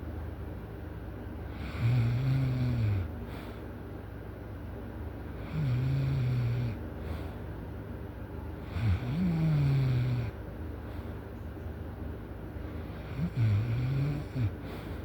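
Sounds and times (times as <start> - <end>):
person snoring loudly: 1.6 - 3.1, 5.4 - 6.8, 8.6 - 10.4, 13.0 - 14.6.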